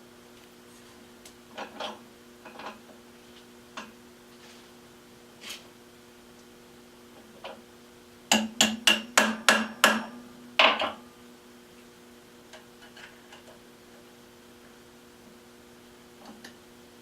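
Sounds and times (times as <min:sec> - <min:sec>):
hammer tapping metal: 0:08.3 - 0:11.0.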